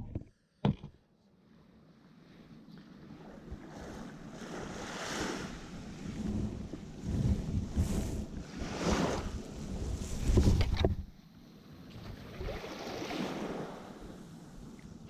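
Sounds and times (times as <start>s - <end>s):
wind buffeting microphone: 3.4s - 11.2s
surf breaking on beach: 3.6s - 10.9s.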